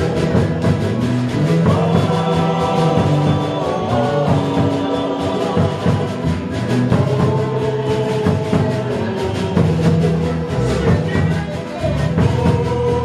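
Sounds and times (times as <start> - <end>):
live band instrumental music: 0.0 - 13.0.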